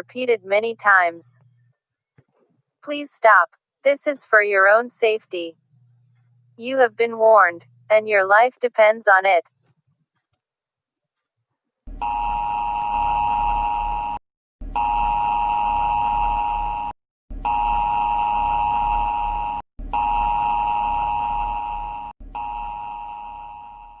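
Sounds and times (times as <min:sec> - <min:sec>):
two-tone alarm blasts: 0:11.9 - 0:24.0.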